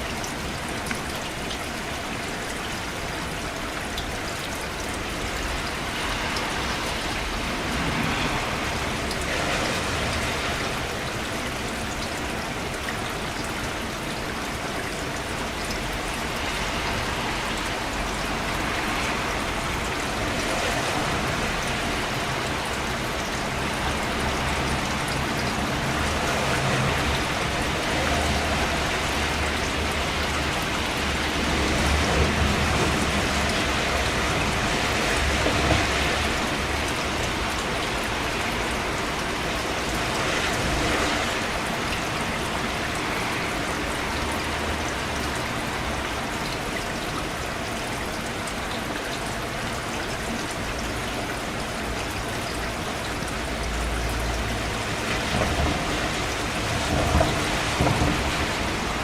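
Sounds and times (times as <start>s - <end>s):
rain pattering on surfaces: 0.0s - 59.0s.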